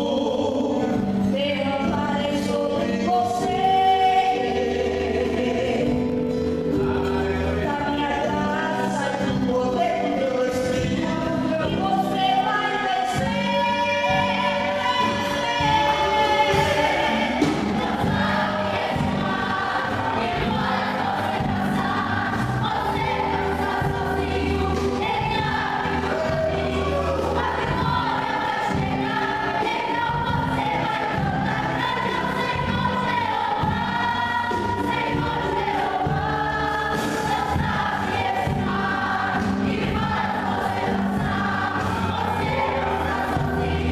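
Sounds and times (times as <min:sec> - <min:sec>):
vocal group singing in harmony: 0:00.0 - 0:43.9.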